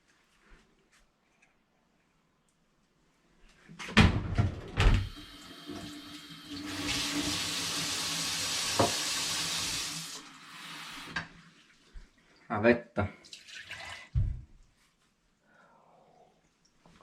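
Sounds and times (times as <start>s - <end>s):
tap water filling jar: 8.7s - 9.1s.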